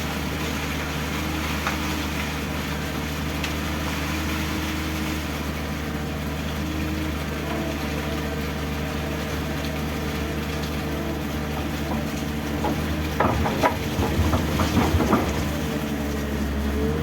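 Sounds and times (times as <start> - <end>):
diesel engine running: 0.0 - 17.0
knocks and rattles: 11.4 - 16.1.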